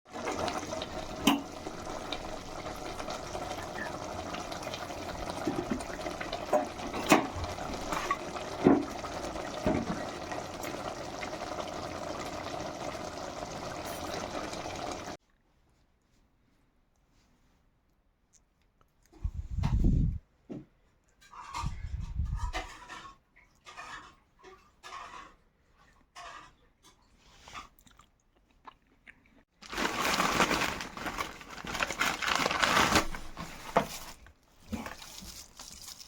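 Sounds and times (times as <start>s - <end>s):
kitchen liquid noise: 0.1s - 15.2s, 29.6s - 36.0s.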